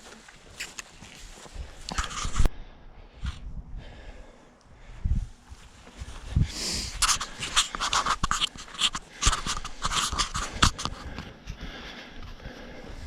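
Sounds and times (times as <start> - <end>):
footsteps on rough ground: 0.0 - 2.5, 5.2 - 13.0
man panting hard: 1.5 - 5.2, 9.0 - 13.0.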